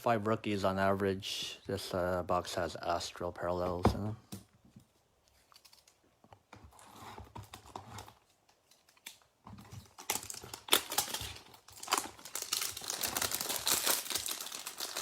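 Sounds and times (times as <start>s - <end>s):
wrapper crinkling and tearing: 7.6s - 15.0s.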